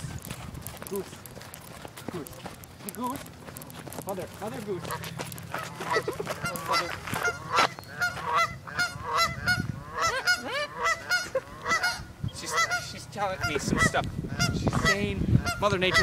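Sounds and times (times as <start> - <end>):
goose honking: 4.6 - 16.0.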